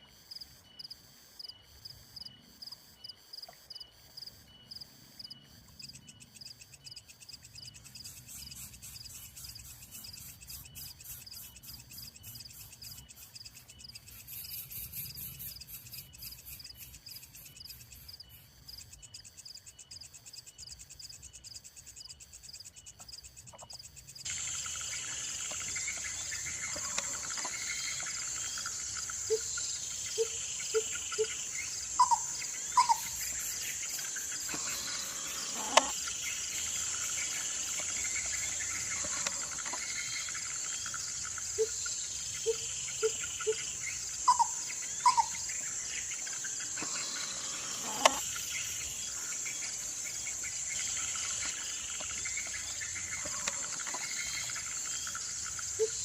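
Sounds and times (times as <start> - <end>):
high-pitched insect chorus: 0.0 - 56.0.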